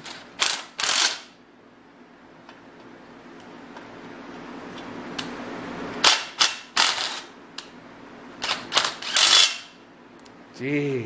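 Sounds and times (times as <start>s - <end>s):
impact driver whir: 0.0s - 1.4s, 6.0s - 7.3s, 8.4s - 9.8s.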